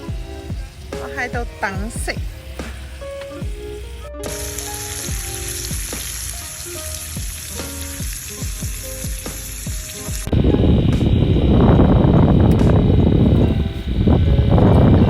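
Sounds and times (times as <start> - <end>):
food sizzling in a pan: 0.0 - 10.3
plucked background music: 0.0 - 15.0
steady rush of noise: 0.0 - 15.0.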